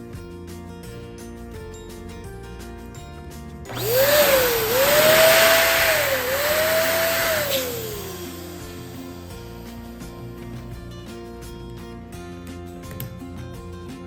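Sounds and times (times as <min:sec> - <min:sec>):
background music: 0:00.0 - 0:14.0
electric balloon pump motor: 0:03.7 - 0:09.7.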